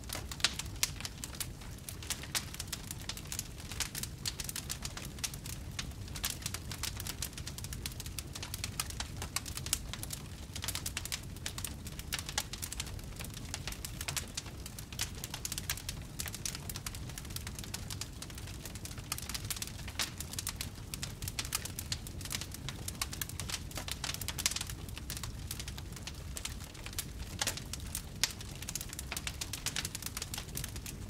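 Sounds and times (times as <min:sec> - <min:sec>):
wood fire crackling and popping: 0:00.0 - 0:31.0.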